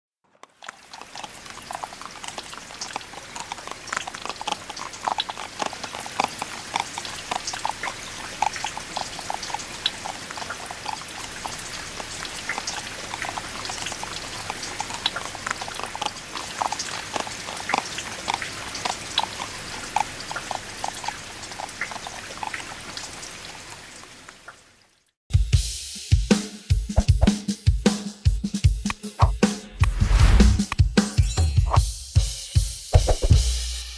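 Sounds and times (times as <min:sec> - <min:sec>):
horse hoofbeats trotting: 0:00.5 - 0:23.1
rain falling: 0:00.5 - 0:25.0.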